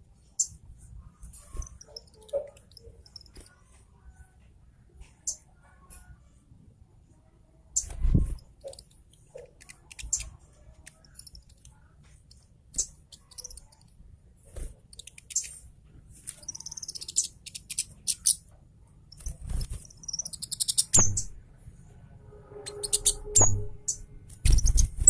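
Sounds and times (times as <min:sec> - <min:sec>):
bird singing high chirps: 0:16.4 - 0:18.4, 0:19.2 - 0:21.4, 0:22.5 - 0:25.0.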